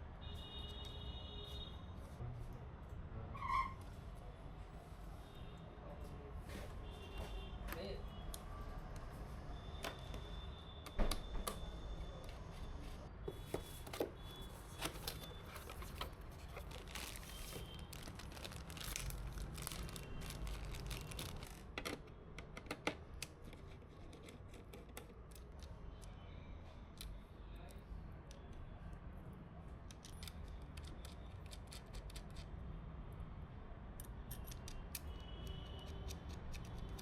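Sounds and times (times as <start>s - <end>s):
rustling: 14.8s - 21.6s.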